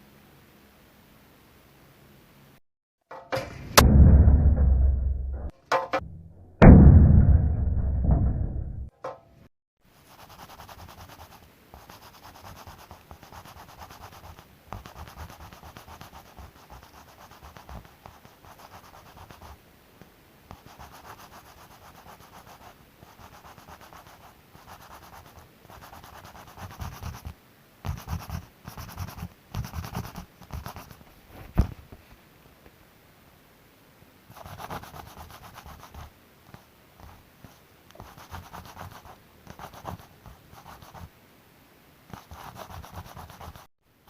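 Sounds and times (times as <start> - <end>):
sharp knock: 3.1 - 9.3.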